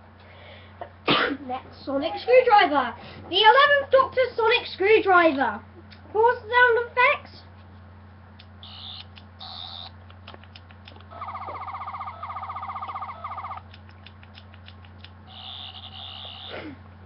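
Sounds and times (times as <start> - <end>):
toy short high beeps: 8.6 - 9.9, 11.1 - 13.6, 15.3 - 16.6
pulsing warbling electronic whine: 11.1 - 13.7, 15.3 - 16.6.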